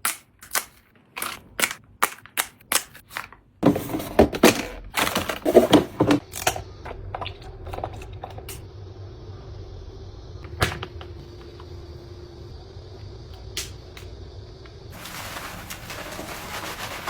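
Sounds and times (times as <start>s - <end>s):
faint steady hum: 3.5s - 17.0s.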